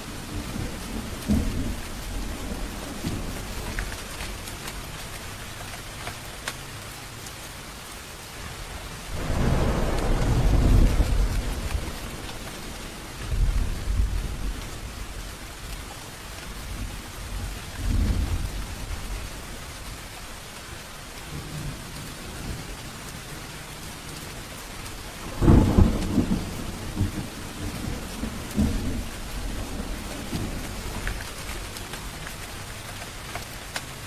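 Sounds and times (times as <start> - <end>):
low thunder rumbling: 0.0 - 5.6, 9.0 - 20.0, 21.2 - 33.2
steady rain falling: 0.0 - 34.0
loud thunderclap: 0.2 - 4.5, 9.1 - 15.3, 25.2 - 31.6.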